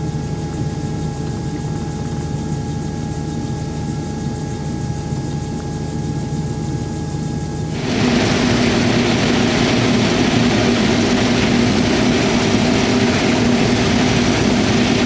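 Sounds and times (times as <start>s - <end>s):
low engine hum: 7.8s - 15.0s
machinery rushing noise: 7.8s - 15.0s.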